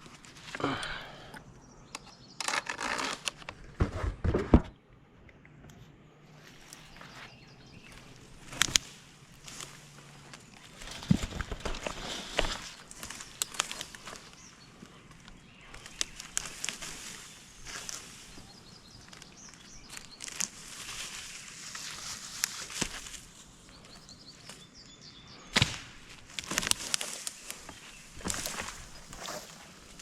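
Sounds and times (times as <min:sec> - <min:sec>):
rustling: 0:06.3 - 0:24.8, 0:25.6 - 0:30.0.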